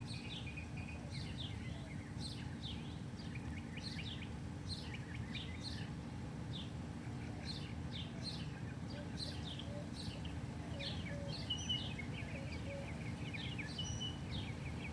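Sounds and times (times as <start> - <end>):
small birds chirping: 7.4 - 14.9.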